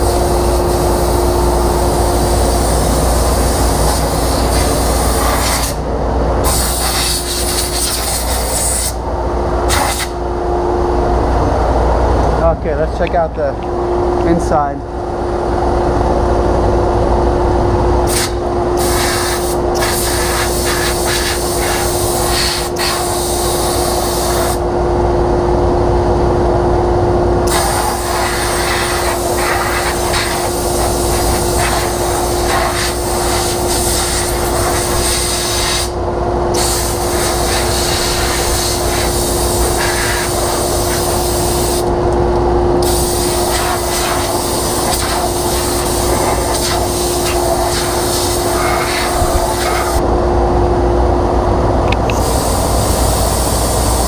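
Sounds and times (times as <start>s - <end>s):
dust-cleaning wand humming: 18.1s - 24.6s, 27.5s - 41.9s, 42.8s - 50.0s, 52.1s - 54.0s.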